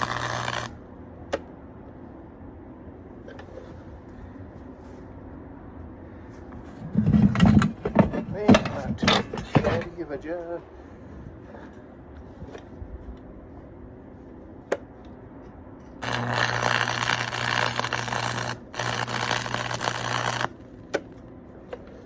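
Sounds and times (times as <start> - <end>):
welding arc crackling and sizzling: 0.0 - 0.8, 16.0 - 20.6
steady low hum: 0.0 - 22.0.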